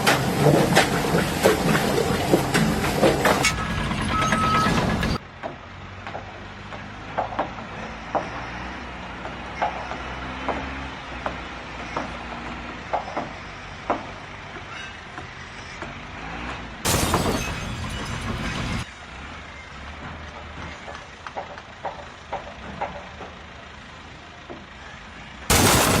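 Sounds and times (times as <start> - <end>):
sharp knocks and clanks: 0.0 - 8.4
heavy engine running: 0.0 - 26.0.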